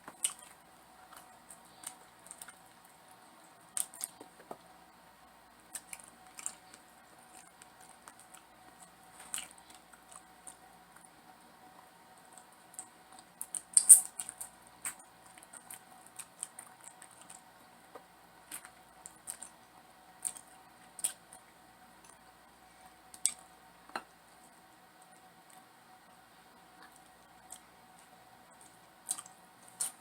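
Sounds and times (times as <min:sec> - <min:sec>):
person chewing food: 0:00.1 - 0:03.2, 0:28.6 - 0:30.0.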